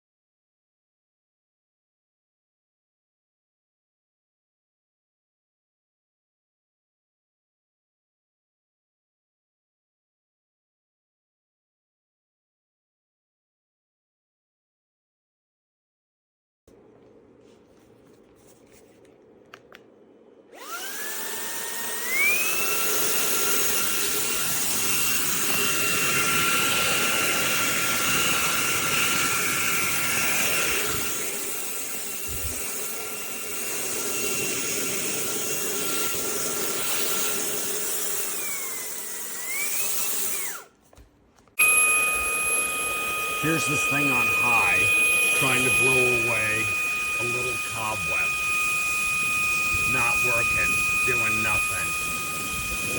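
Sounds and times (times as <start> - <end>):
handheld vacuum motor whine: 20.5 - 40.9, 41.5 - 52.9.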